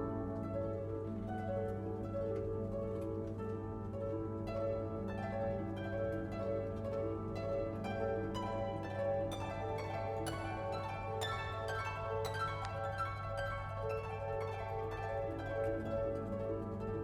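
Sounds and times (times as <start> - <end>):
plucked strings music: 0.0 - 17.0.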